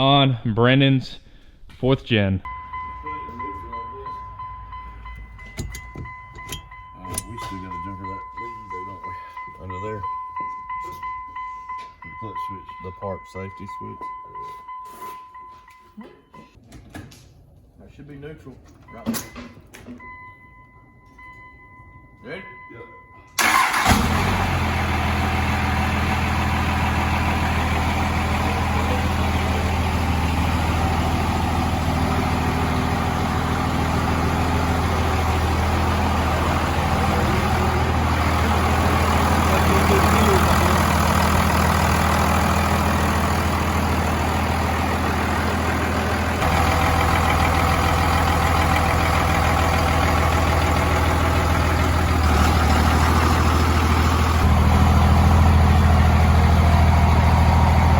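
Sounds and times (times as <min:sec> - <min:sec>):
diesel engine idling: 0:02.5 - 0:14.2, 0:23.4 - 0:57.9.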